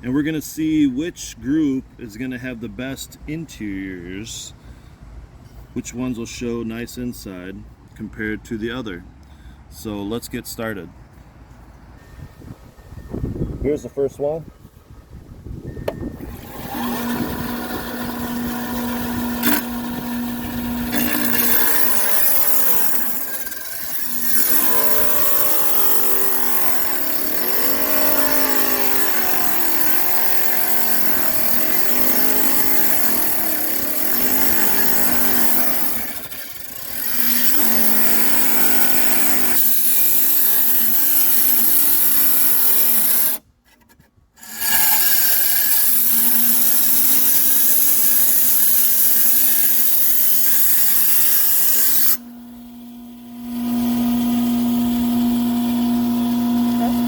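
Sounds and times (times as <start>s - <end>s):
tile saw grinding stone: 16.3s - 52.2s.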